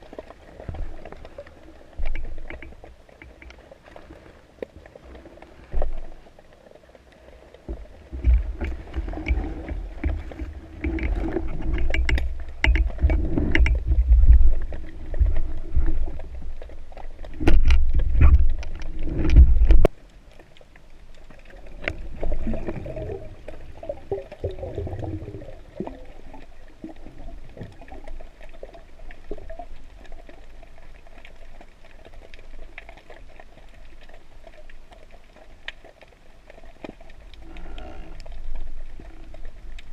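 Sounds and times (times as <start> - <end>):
water sloshing and gurgling: 0.0 - 39.9
clicks and knocks: 8.2 - 14.4.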